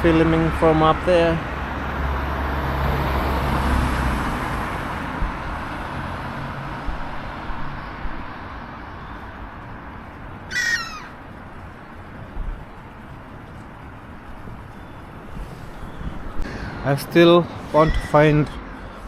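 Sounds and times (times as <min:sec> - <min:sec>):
traffic on wet road: 0:00.0 - 0:19.0
short bird call: 0:10.5 - 0:11.2.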